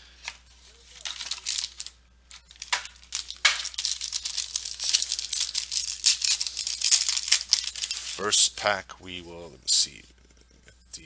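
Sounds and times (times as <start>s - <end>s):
packaging being torn and crinkled: 0.2s - 8.4s.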